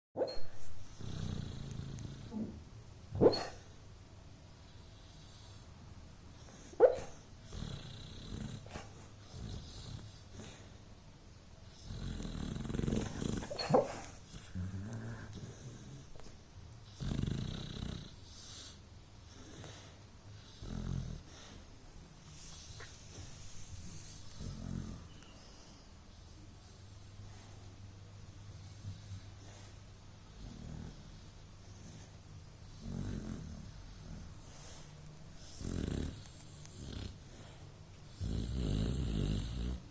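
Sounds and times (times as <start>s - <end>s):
dog snoring: 0.6s - 2.6s, 6.4s - 10.8s, 11.7s - 25.8s, 28.5s - 39.9s
dog breathing softly: 11.6s - 39.9s.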